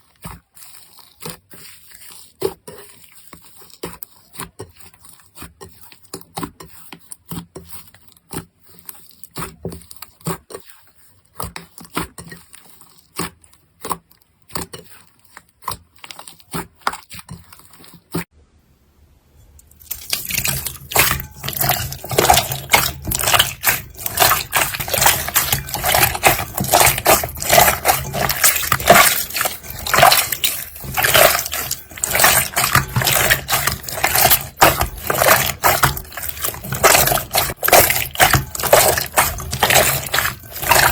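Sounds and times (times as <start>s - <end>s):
slime squished by hand: 19.7s - 40.9s.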